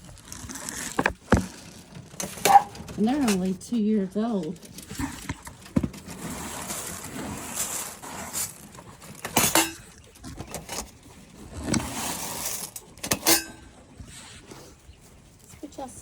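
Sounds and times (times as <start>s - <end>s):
rustling: 0.0s - 16.0s
cage parts clicking and knocking: 1.0s - 3.6s, 8.7s - 11.8s, 12.4s - 13.7s.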